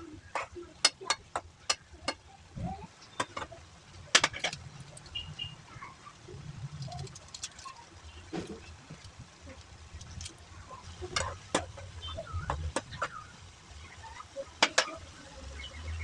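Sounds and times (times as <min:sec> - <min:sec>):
sharp clicks and knocks: 0:03.1 - 0:05.1.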